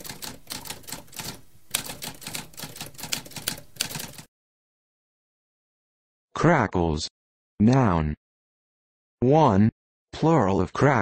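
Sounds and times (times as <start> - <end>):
typewriter typing: 0.0 - 4.3.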